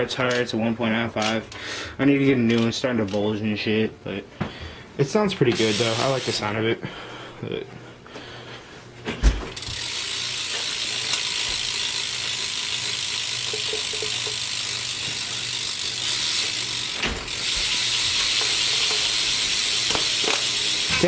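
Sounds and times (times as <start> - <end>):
freewheel clicking buzz: 5.6 - 6.5, 9.5 - 21.0.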